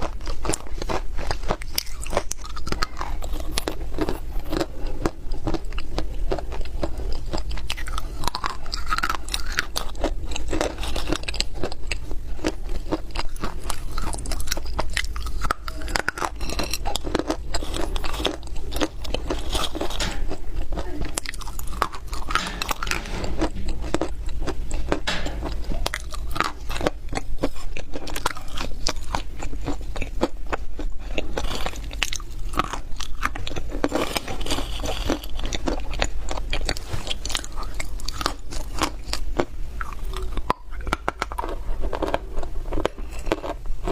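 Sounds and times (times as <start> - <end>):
chewing crunchy clay: 0.0 - 43.9
low hum: 2.4 - 28.8.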